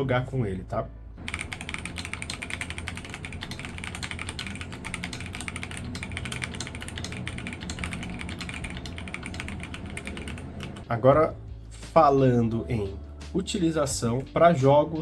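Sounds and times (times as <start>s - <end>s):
typing on mechanical keyboard: 1.2s - 10.9s.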